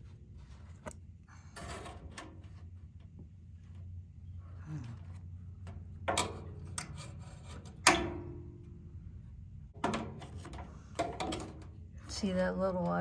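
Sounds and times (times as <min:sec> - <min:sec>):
steady low hum: 0:00.0 - 0:13.0
metal knocks and clicks: 0:06.0 - 0:08.6, 0:09.8 - 0:11.8.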